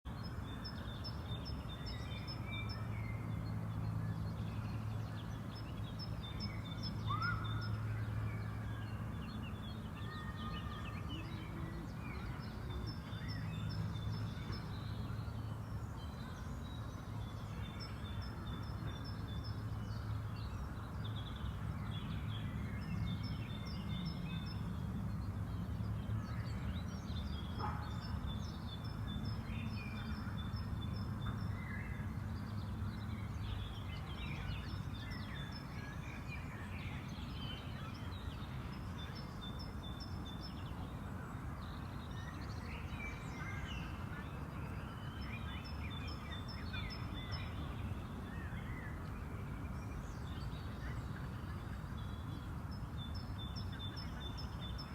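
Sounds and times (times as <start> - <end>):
birds singing: 0.1 - 54.9
lower whistled bird calls: 6.0 - 8.8.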